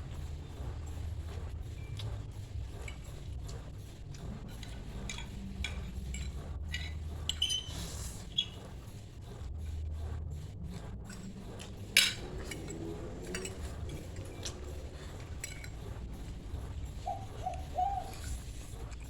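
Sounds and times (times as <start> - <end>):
cutlery clinking against bowl: 11.1 - 15.9.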